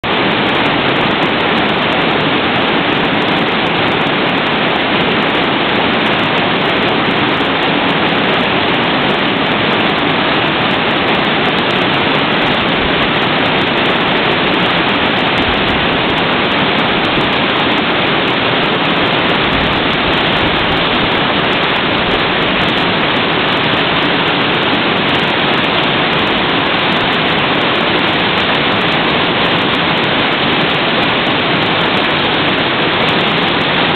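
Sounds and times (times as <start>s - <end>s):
waterfall rushing: 0.0s - 33.9s.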